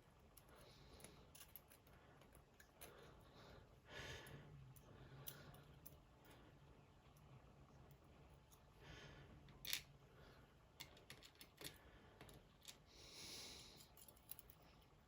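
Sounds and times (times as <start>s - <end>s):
metal lock parts clicking: 10.8s - 11.8s.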